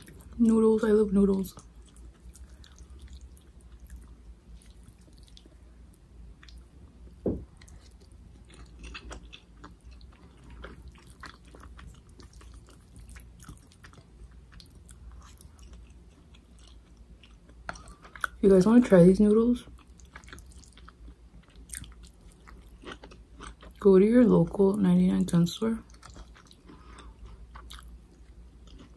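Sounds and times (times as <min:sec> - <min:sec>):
person chewing noodles: 0:00.0 - 0:00.4, 0:01.6 - 0:18.4, 0:19.7 - 0:23.8, 0:25.8 - 0:28.9
thump: 0:07.2 - 0:07.5.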